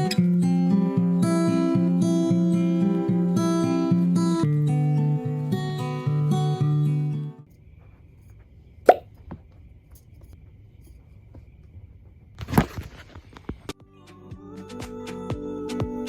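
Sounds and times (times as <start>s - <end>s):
guitar music: 0.0s - 7.5s.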